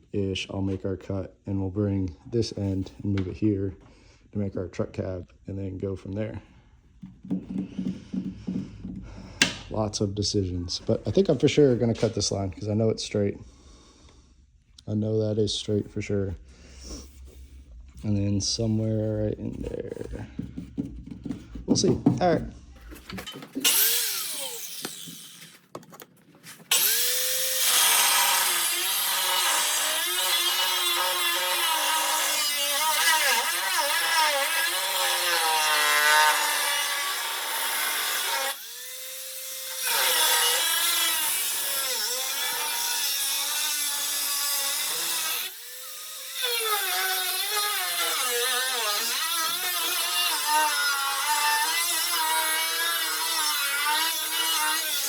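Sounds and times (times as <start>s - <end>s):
power cutting tool cutting metal: 23.6s - 25.5s, 26.7s - 55.0s.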